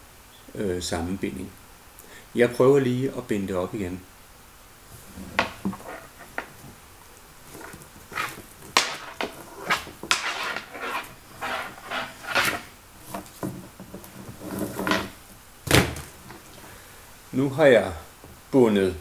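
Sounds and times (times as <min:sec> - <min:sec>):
rope knocking on table: 0:05.2 - 0:06.5
rope rustling and swishing: 0:07.4 - 0:15.2.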